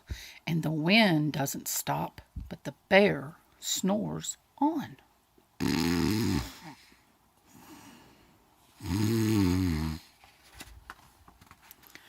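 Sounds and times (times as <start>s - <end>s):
person imitating bear snoring: 5.6s - 6.8s, 8.8s - 10.1s.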